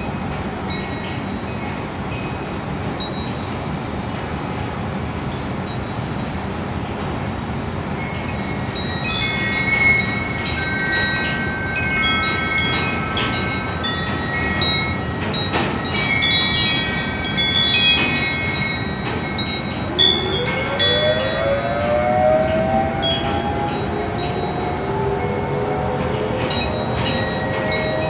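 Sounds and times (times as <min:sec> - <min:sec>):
wind chimes ringing: 0:00.0 - 0:04.7, 0:07.8 - 0:28.0
steady background hiss: 0:00.0 - 0:28.0
warning siren winding up: 0:18.0 - 0:28.0.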